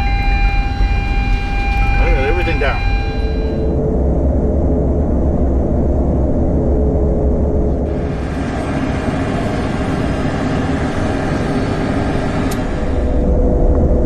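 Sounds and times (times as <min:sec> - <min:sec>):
airplane rolling on runway: 0:00.0 - 0:14.0
engine and airflow hiss: 0:07.6 - 0:13.7.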